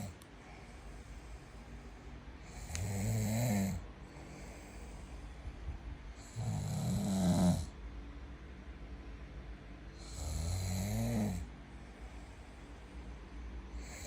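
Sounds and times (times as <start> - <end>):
quiet breathing: 0.0 - 7.8, 9.9 - 14.0
person snoring: 2.4 - 3.8, 6.2 - 7.7, 10.0 - 11.5.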